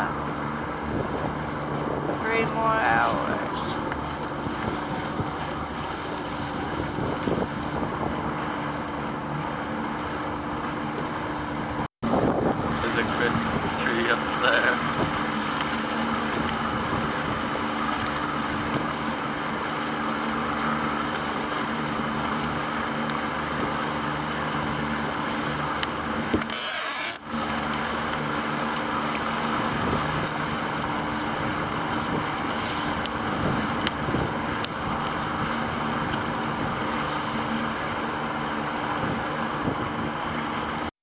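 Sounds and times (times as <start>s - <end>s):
wind noise: 0.0s - 8.8s, 10.1s - 19.5s, 29.2s - 40.5s
boat motor humming: 0.0s - 40.9s
water noise: 0.0s - 40.9s.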